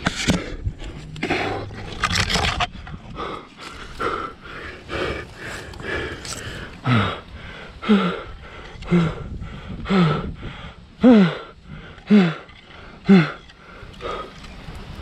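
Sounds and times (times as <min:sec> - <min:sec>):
heavy breathing exhales: 0:02.8 - 0:14.5.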